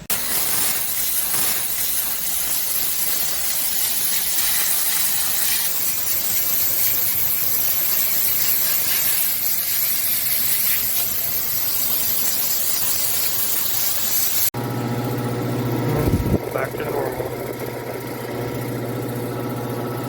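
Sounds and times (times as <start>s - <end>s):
hose water spray hissing: 0.0s - 14.6s.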